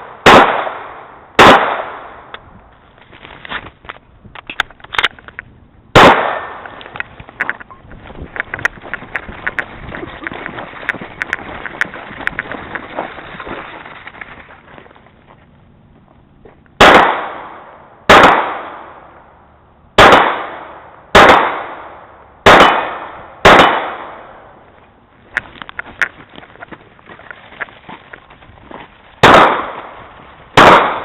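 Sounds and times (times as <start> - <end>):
rustling and clicks of movement: 2.7 - 5.6, 6.6 - 16.8, 24.7 - 29.2
handgun shots: 6.0 - 6.8, 22.5 - 24.2, 29.2 - 29.9, 30.6 - 31.0.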